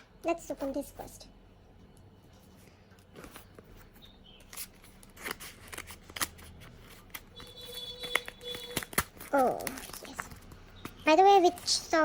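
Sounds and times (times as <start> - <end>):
packaging rustling: 3.0 - 10.9.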